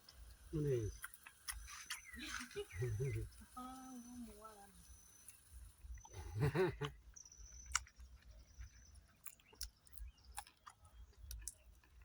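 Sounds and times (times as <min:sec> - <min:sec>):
mouth clicks: 0:07.6 - 0:08.2, 0:09.1 - 0:12.0
person chewing food: 0:07.6 - 0:12.0.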